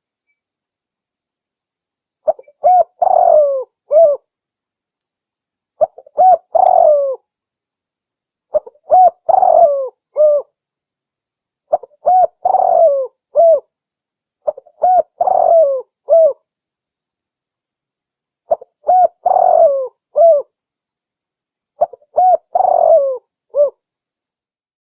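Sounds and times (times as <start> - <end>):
dove cooing: 2.3 - 4.2, 5.8 - 7.2, 8.5 - 10.5, 11.7 - 13.7, 14.4 - 16.4, 18.5 - 20.5, 21.8 - 23.8.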